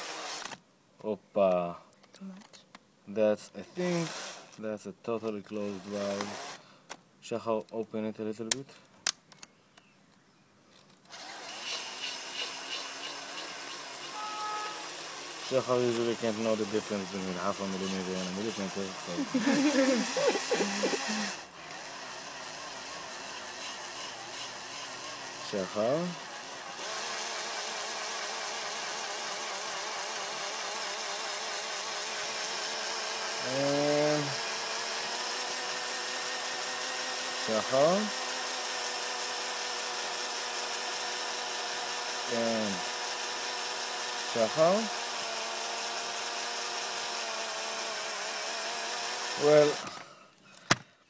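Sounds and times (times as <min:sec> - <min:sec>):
motor whirring: 0:00.0 - 0:00.6, 0:05.6 - 0:06.6, 0:11.0 - 0:50.2
person speaking: 0:01.0 - 0:06.4, 0:15.4 - 0:21.4, 0:25.2 - 0:26.9, 0:33.4 - 0:34.4, 0:42.2 - 0:42.9, 0:44.3 - 0:45.0, 0:49.3 - 0:50.0
valve grinding against seat: 0:11.2 - 0:50.0.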